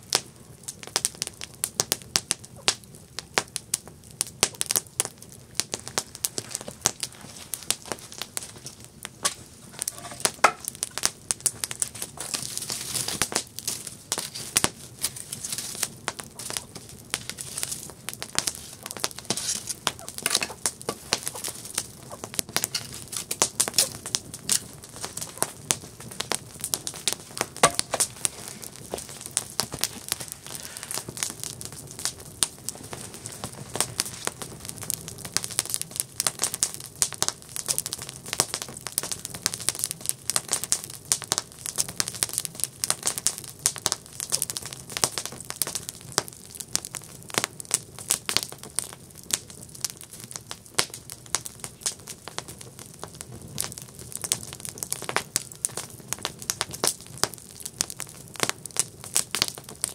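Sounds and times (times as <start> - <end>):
low hiss of flames: 0.0 - 46.3
burning wood popping and snapping: 0.0 - 59.9.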